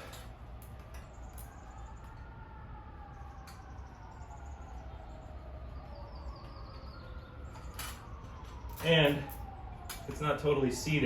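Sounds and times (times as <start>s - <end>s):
faint siren wailing: 0.0s - 11.0s.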